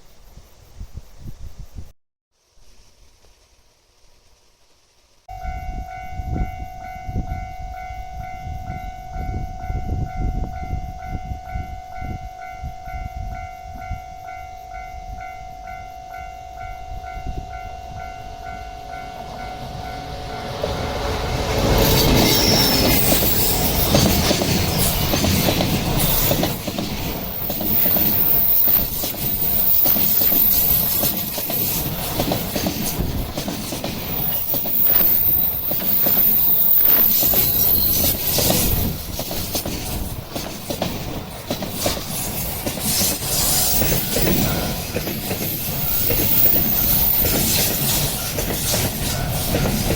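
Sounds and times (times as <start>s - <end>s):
level crossing warning bell: 5.3s - 31.9s
train rumble and wheel clatter: 5.4s - 49.9s.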